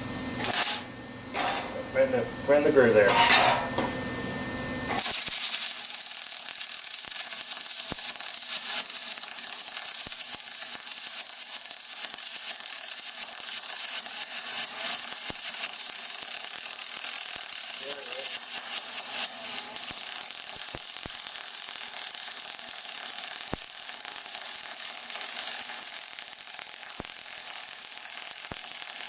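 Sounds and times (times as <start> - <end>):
welding arc hissing and crackling: 0.4 - 0.9, 4.9 - 29.0.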